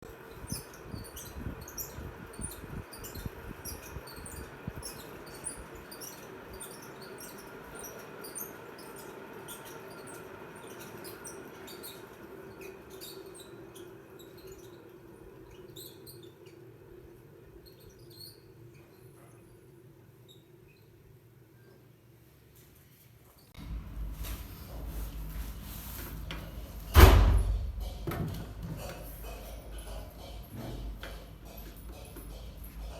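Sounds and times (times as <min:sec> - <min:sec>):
ceiling fan motor hum: 0:00.1 - 0:21.4, 0:23.6 - 0:32.9
bearing squeaks and chirps: 0:00.1 - 0:21.8
low knocking: 0:26.3 - 0:32.9.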